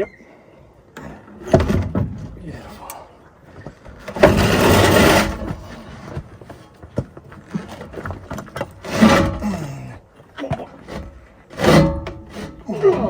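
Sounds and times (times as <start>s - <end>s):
metal knocks and clanks: 1.4s - 2.4s, 4.0s - 6.2s, 7.5s - 9.8s, 10.5s - 13.0s
machine scraping on concrete: 4.1s - 6.2s, 8.7s - 9.9s, 10.8s - 13.0s.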